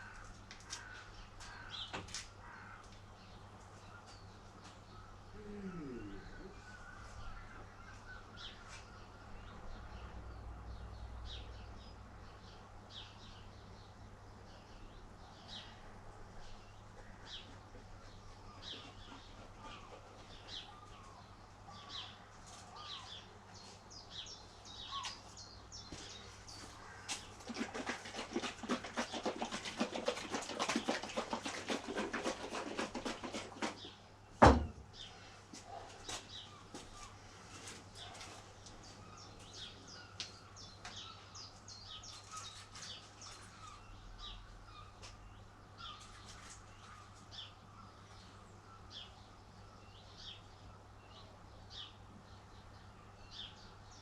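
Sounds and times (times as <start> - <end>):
small birds chirping: 0.0 - 34.2, 34.9 - 54.0
sharp knock: 34.4 - 34.8.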